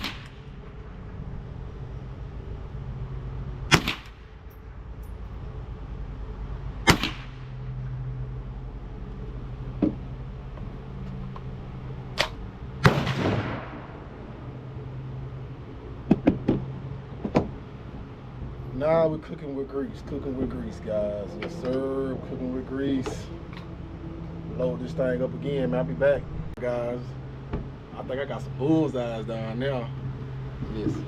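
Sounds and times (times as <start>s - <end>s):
gunshots: 0.0s - 0.5s, 3.7s - 4.4s, 6.8s - 7.6s, 12.8s - 14.2s
low hum: 0.0s - 31.0s.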